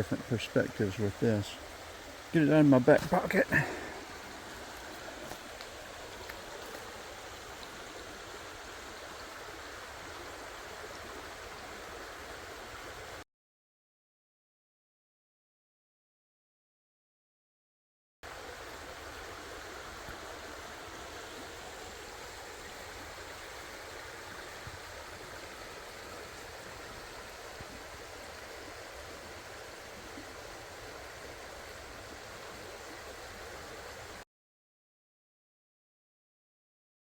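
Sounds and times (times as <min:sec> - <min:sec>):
creek water running: 0:00.0 - 0:13.2, 0:18.2 - 0:34.2.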